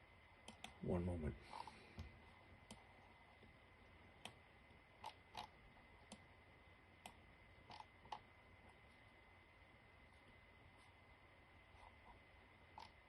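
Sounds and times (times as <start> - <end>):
faint high whine: 0.0 - 13.0
computer mouse clicks: 0.4 - 0.8, 1.6 - 3.6, 4.2 - 6.3, 7.0 - 8.3, 11.8 - 13.0.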